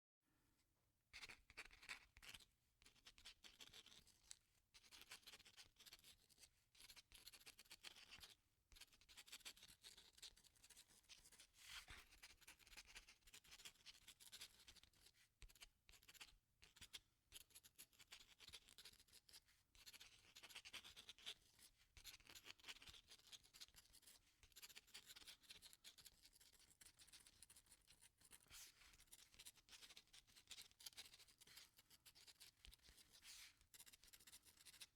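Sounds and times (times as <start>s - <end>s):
pen scratching on paper: 26.0s - 34.8s.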